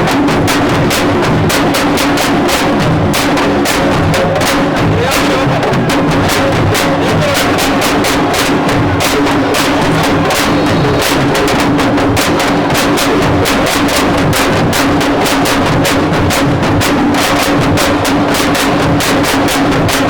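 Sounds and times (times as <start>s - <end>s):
fast hand drumming: 0.0s - 20.0s
steady held tone: 4.2s - 14.2s.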